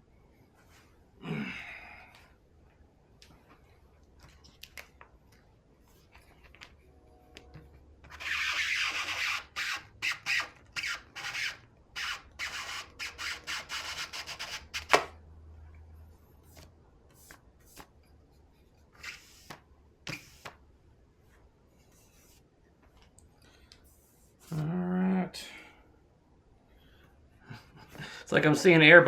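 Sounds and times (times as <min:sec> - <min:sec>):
squeegee rubbing vinyl: 0:08.0 - 0:15.2, 0:18.9 - 0:20.6.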